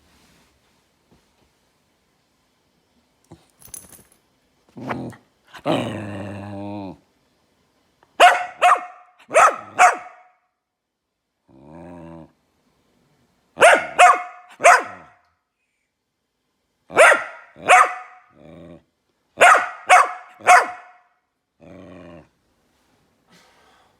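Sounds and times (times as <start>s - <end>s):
puppy growling: 4.8s - 7.0s, 11.5s - 12.4s, 18.3s - 18.9s, 21.6s - 22.4s
puppy barking: 8.2s - 10.4s, 13.6s - 15.2s, 16.9s - 18.3s, 19.4s - 21.1s.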